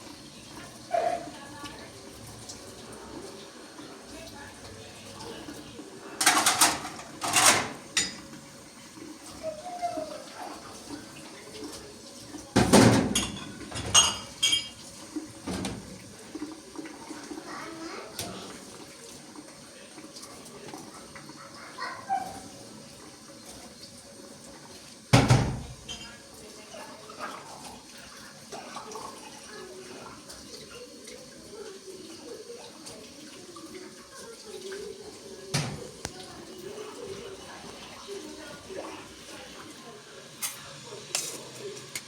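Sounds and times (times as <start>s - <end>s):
running water rushing: 0.0s - 42.0s
crockery clinking: 6.2s - 8.3s, 12.6s - 14.9s
dishes and cutlery clattering: 6.2s - 8.4s, 12.6s - 15.9s, 25.2s - 26.2s, 40.4s - 42.0s.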